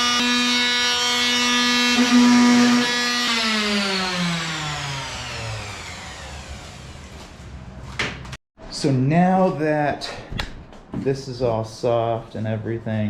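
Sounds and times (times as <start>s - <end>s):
power tool motor whining: 0.0s - 7.4s.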